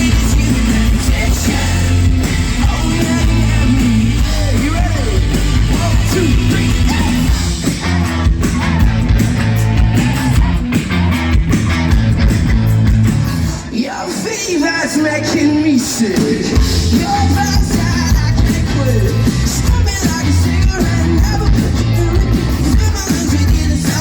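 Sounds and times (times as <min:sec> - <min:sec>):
person singing: 0:00.0 - 0:07.4
rock band playing live: 0:00.0 - 0:24.0.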